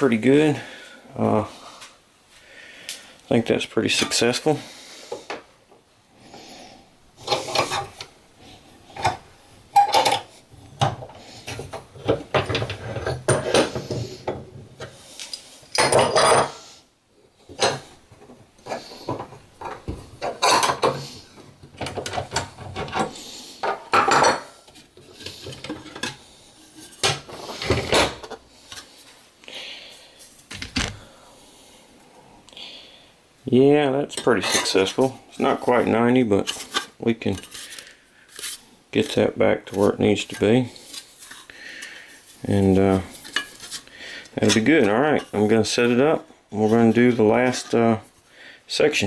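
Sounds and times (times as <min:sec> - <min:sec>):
metal knocks and scraping on bench: 0:09.8 - 0:15.0.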